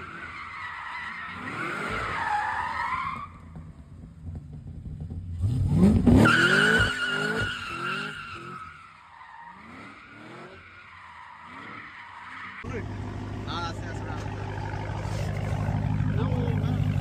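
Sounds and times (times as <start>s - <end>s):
tires squealing: 0.0s - 4.4s, 5.4s - 17.0s
car engine revving hard: 5.4s - 8.5s.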